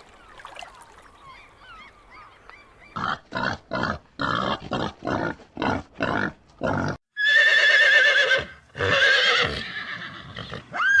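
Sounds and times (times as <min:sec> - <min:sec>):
horse whinnying: 0:07.2 - 0:11.0.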